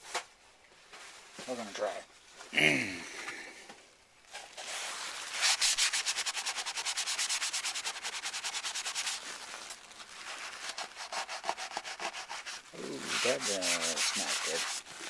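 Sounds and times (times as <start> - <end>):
paper towel rubbing plastic: 4.5 - 15.0.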